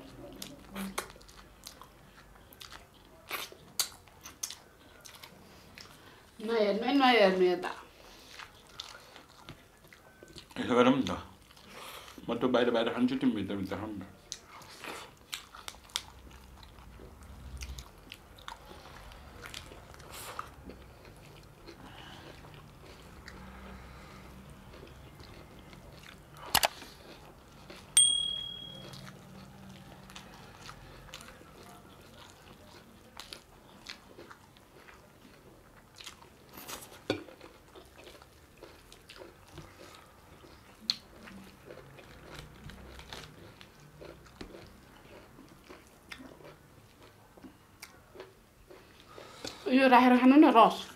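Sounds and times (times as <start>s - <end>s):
person chewing food: 0.0s - 6.4s, 7.8s - 12.4s, 13.5s - 49.7s
utensil clinking on dish: 28.0s - 28.8s.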